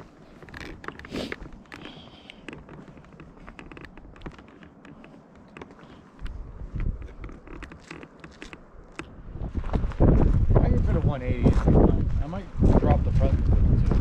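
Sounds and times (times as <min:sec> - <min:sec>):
light taps and clicks: 0:00.4 - 0:09.1.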